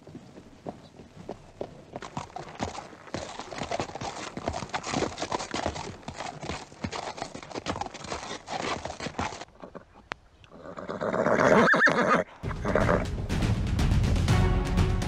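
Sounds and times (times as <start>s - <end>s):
horse hooves clip-clopping: 0.0s - 10.6s.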